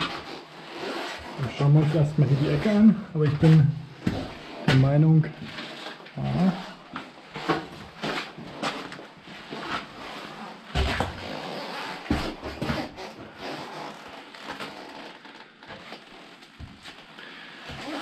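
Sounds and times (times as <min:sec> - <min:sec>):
footsteps on rubble: 0:01.4 - 0:05.0.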